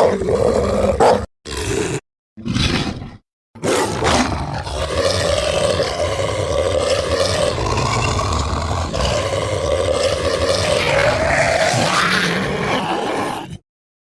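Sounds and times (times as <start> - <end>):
werewolf growling snarl: 0.0 - 13.6.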